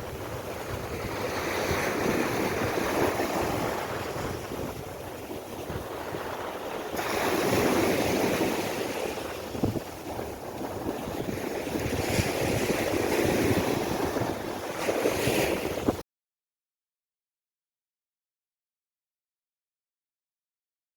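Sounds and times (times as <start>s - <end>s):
waves washing onto sand: 0.0s - 16.0s
wind buffeting microphone: 0.0s - 16.0s.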